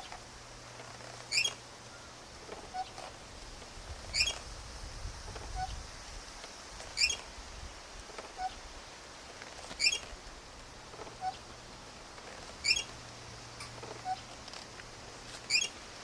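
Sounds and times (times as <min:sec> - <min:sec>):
swing squeaking: 0:00.0 - 0:00.2, 0:00.8 - 0:04.5, 0:05.3 - 0:05.8, 0:06.9 - 0:07.3, 0:08.1 - 0:08.6, 0:09.4 - 0:10.1, 0:10.8 - 0:14.7, 0:15.4 - 0:15.8.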